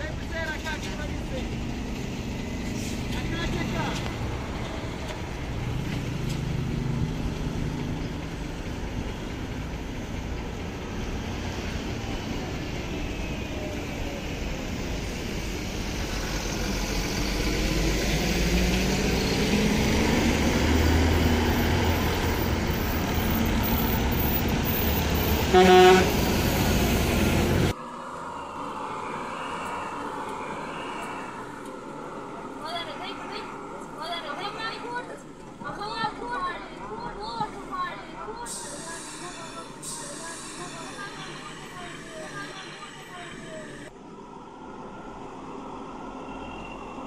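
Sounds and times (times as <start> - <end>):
bus engine running: 0.0 - 27.8
bus horn blast: 25.3 - 26.4.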